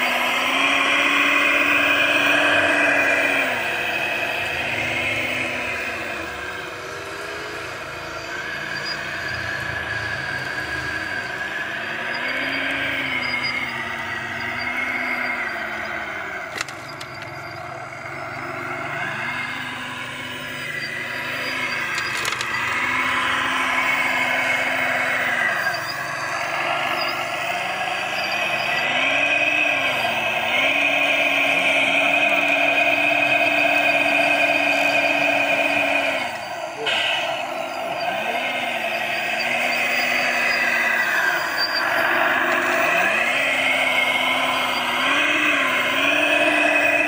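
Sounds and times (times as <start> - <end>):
electric motors whining: 0.0 - 47.0
sharp clicks: 8.6 - 30.8.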